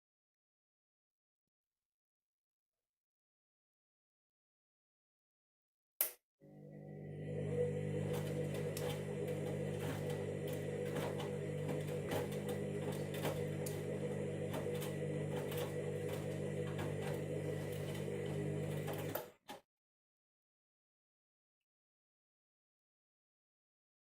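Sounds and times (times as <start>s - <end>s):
washing machine motor humming: 6.4s - 19.4s
washing machine drum clicks and knocks: 8.1s - 19.3s.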